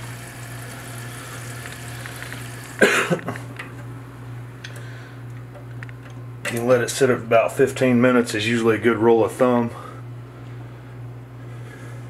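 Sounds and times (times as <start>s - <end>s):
water running into toilet tank: 0.0s - 2.9s
low steady hum: 0.0s - 12.0s
person coughing: 2.8s - 3.5s.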